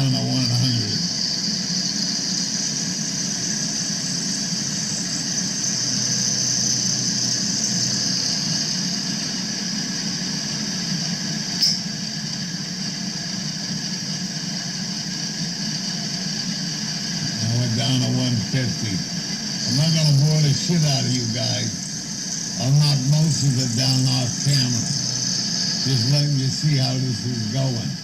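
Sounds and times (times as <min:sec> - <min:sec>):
spindle hum: 0:00.0 - 0:28.0
end mill squealing on metal: 0:11.6 - 0:11.9.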